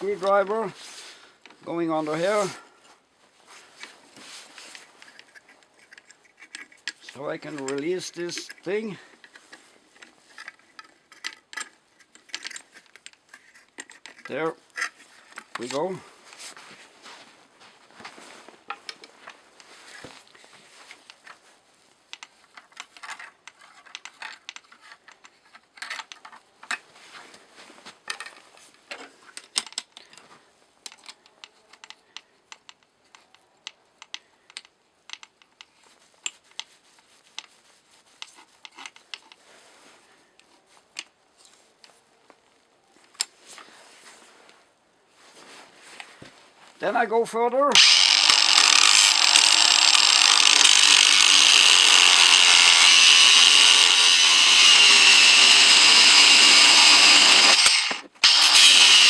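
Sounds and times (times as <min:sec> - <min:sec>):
screwdriver and cast iron parts clicking: 0:05.0 - 0:15.8, 0:47.7 - 0:59.0.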